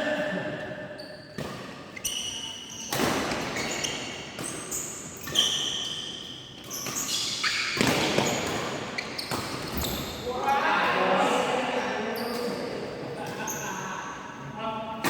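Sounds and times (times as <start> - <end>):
shoes squeaking on court floor: 0.9 - 10.6, 12.1 - 14.1
racket hitting shuttlecock: 1.4 - 10.1.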